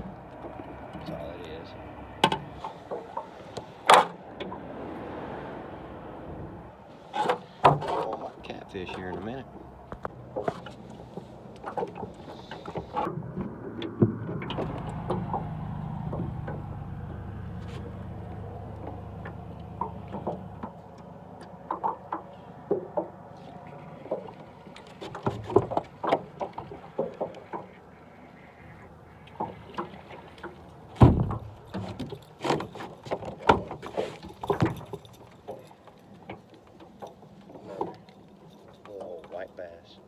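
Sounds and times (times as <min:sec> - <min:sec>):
low hum: 0:13.1 - 0:21.7
knocks against a boat: 0:18.8 - 0:20.8, 0:29.4 - 0:35.7.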